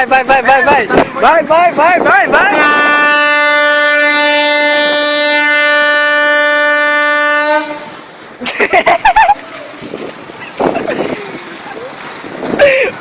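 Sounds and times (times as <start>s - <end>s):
train horn blast: 2.6s - 8.1s.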